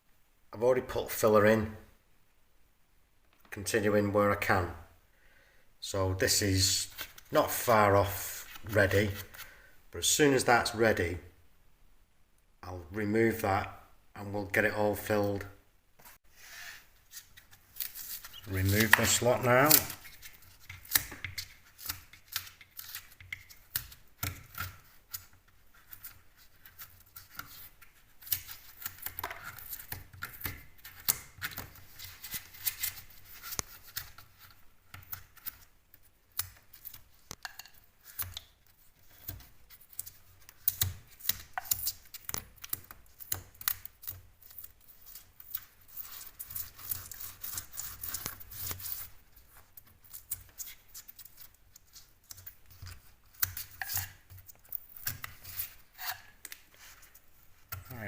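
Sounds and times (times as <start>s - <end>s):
foam being cut and scraped: 55.0s - 56.4s.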